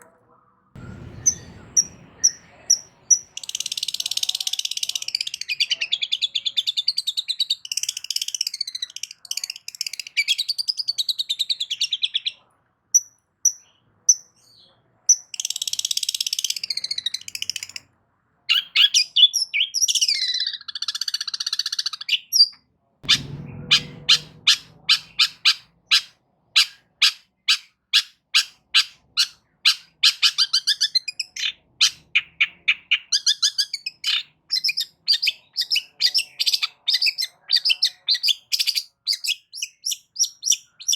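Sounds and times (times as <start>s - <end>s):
shrike chattering song: 0.8s - 11.0s, 23.0s - 40.9s.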